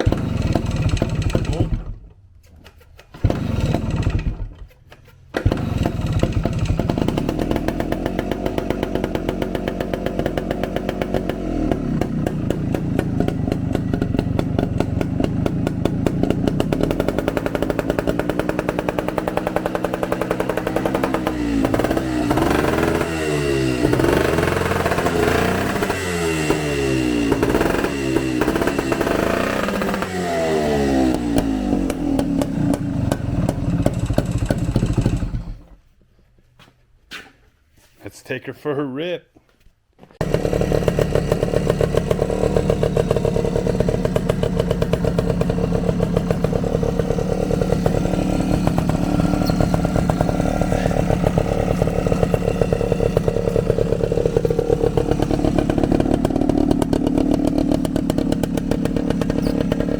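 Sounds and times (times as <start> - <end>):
engine revving: 0.0 - 2.0, 3.2 - 4.5, 5.4 - 35.7, 40.2 - 59.9
dirt bike engine starting: 0.0 - 35.8, 40.2 - 59.9.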